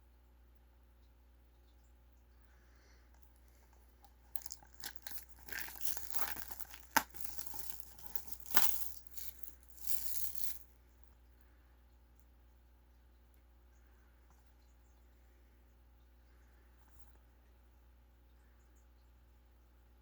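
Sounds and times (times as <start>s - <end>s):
packaging crinkling: 4.0s - 10.6s
packaging snaps: 4.4s - 10.6s.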